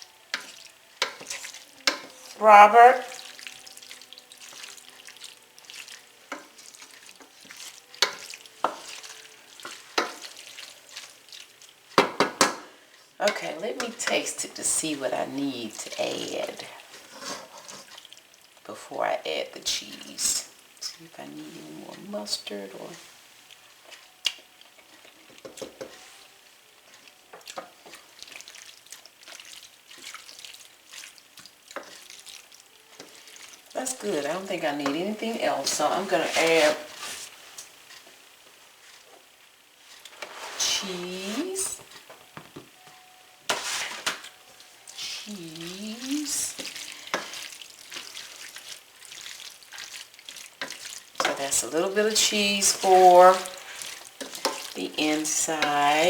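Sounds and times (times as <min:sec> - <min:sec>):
sauce simmering with pops: 0:00.0 - 0:02.3, 0:03.0 - 0:18.7, 0:23.4 - 0:40.8, 0:43.4 - 0:56.0
food sizzling in a pan: 0:00.0 - 0:56.0
utensil scraping a pan: 0:15.8 - 0:18.0, 0:32.9 - 0:38.2, 0:39.8 - 0:42.1, 0:43.5 - 0:44.3, 0:44.9 - 0:56.0.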